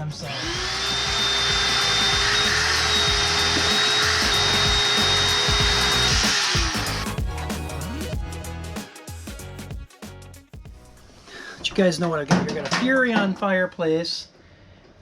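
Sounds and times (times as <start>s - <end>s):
background music: 0.0s - 12.6s
power tool whining: 0.2s - 7.2s.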